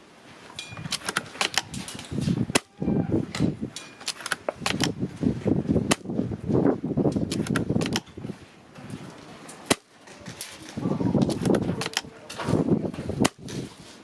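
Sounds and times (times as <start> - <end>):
gusty wind buffeting microphone: 0.7 - 9.4, 10.2 - 14.0.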